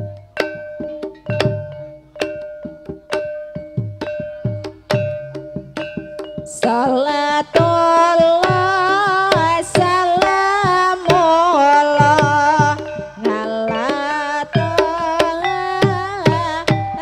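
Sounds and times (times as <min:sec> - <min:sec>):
struck metal notes: 0:00.0 - 0:07.0
hand drum strokes: 0:00.0 - 0:17.0
person singing wavering line: 0:06.6 - 0:17.0.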